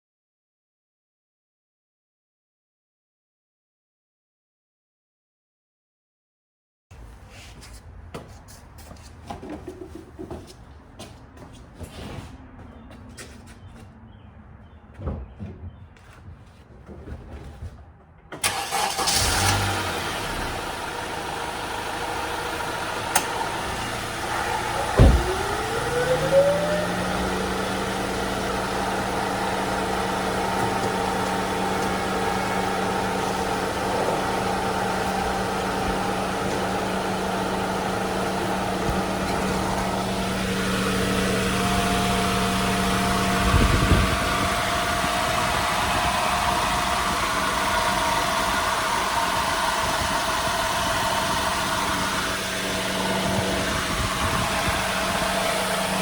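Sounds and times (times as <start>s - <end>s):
car engine starting and idling: 18.3s - 56.0s
short rising tone: 24.3s - 28.1s.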